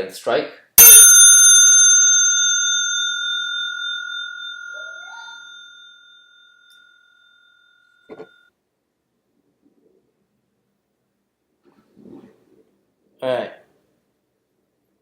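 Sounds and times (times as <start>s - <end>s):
brass bicycle bell ringing: 0.8s - 8.4s.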